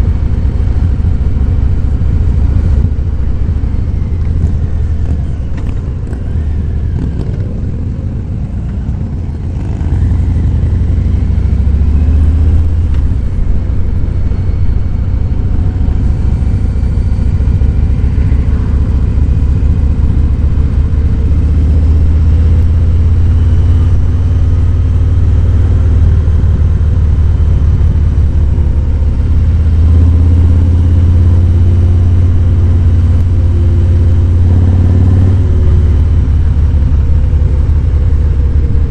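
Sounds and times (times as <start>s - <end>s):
motorcycle engine rumble: 0.0s - 38.9s.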